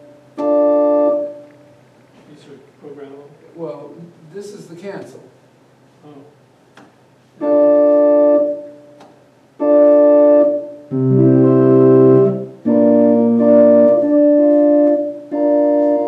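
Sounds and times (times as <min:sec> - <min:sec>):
electronic organ chords: 0:00.0 - 0:01.9, 0:07.4 - 0:16.0
deep pedal bass note: 0:10.9 - 0:14.6.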